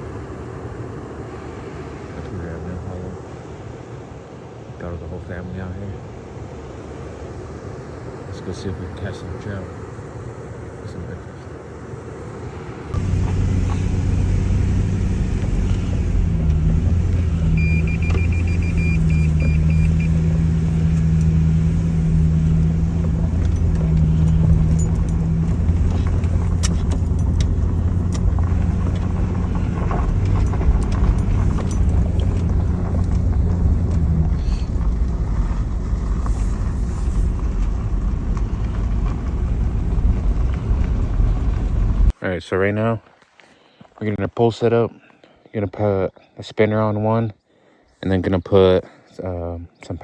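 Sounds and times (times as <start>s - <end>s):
vehicle engine humming: 0.0s - 42.1s
electronic chime beeps: 17.6s - 20.2s.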